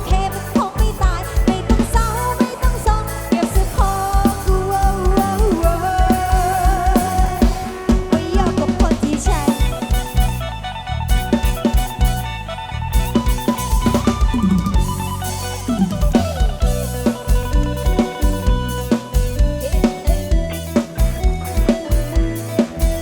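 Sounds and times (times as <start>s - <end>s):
drum kit beat: 0.0s - 23.0s
heavy bass: 0.0s - 23.0s
keyboard and guitar notes: 0.0s - 23.0s
pop band playing instrumental: 0.0s - 23.0s.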